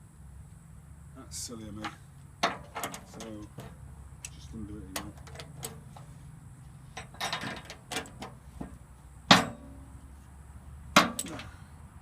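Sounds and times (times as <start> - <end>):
sharp metal clanks: 1.8 - 3.8, 7.0 - 10.0, 11.0 - 11.5.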